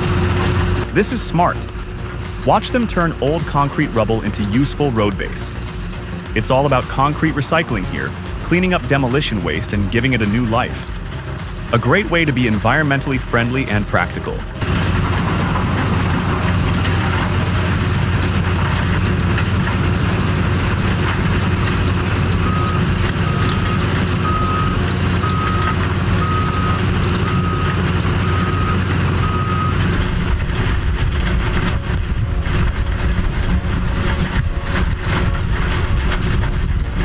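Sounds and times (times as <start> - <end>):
diesel engine running: 0.0 - 37.0
back-up alarm beeping: 14.4 - 31.0.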